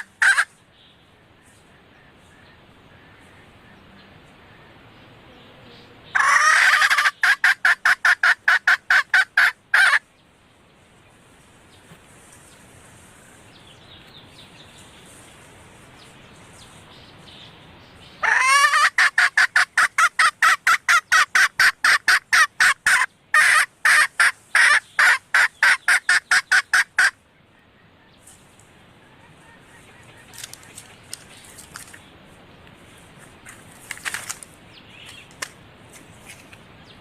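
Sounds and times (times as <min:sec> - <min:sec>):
hen cackling: 0:00.0 - 0:00.6, 0:05.9 - 0:10.1, 0:18.2 - 0:28.1, 0:28.9 - 0:31.1.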